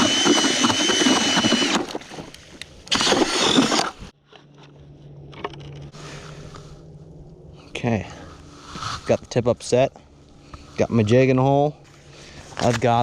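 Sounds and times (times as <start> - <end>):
power ice auger motor whine: 0.0 - 2.0, 2.9 - 4.0.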